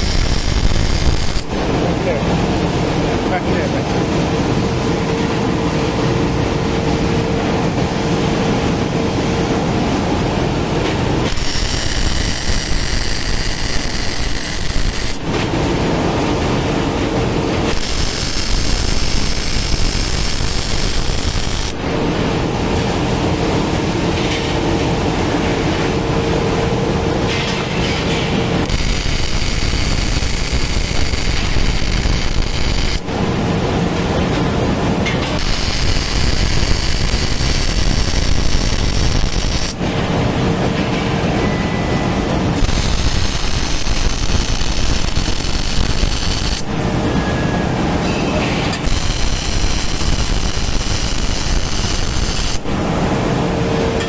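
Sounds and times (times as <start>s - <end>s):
arc welding crackling and sizzling: 0.0s - 2.2s, 11.2s - 16.1s, 17.5s - 22.2s, 28.4s - 40.6s, 42.5s - 47.1s, 48.7s - 53.2s.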